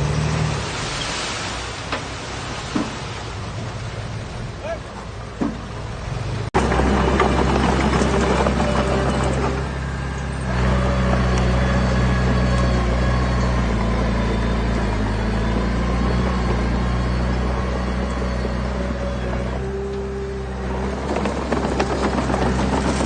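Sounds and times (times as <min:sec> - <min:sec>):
heavy diesel engine running: 0:06.6 - 0:23.0.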